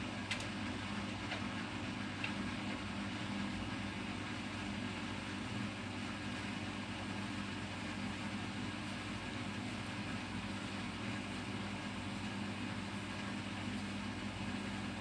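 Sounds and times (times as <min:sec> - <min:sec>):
washing machine hum: 0:00.0 - 0:15.0.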